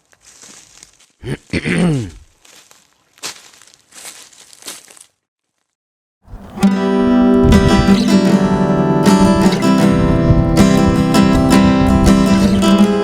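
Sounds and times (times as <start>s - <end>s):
strummed acoustic guitar music: 6.3s - 13.0s.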